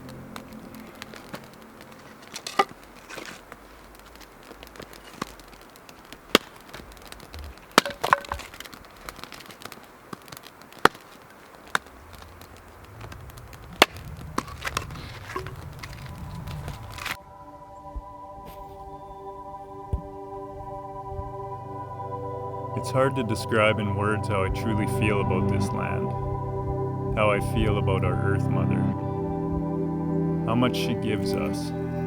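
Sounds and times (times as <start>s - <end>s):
campfire crackling and popping: 0.0s - 17.2s, 22.8s - 32.0s
low rumble: 11.9s - 18.4s, 20.1s - 32.0s.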